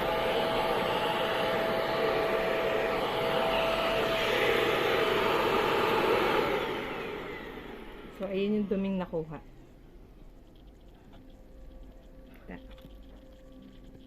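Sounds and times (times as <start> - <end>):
vacuum cleaner running: 0.0 - 9.2.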